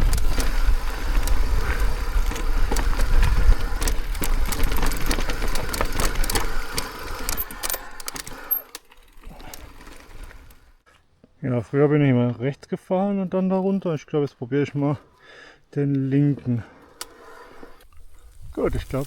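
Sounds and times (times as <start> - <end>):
wind rumble on microphone: 0.0 - 5.7
tyres crunching over stones: 0.0 - 8.0
bike clicks and rattles: 0.0 - 10.8.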